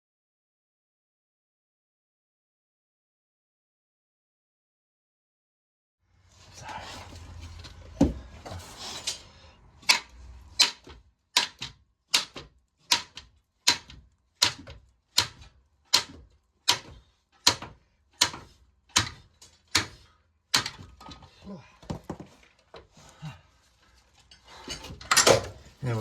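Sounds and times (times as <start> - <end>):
scrape: 6.2 - 10.5.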